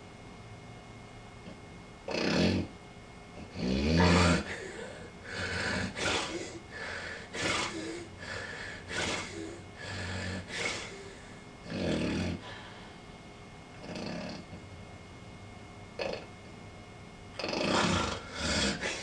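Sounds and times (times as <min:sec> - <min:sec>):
person snoring: 0:02.1 - 0:02.7, 0:03.5 - 0:12.7, 0:13.8 - 0:14.6, 0:16.0 - 0:16.3, 0:17.4 - 0:19.0.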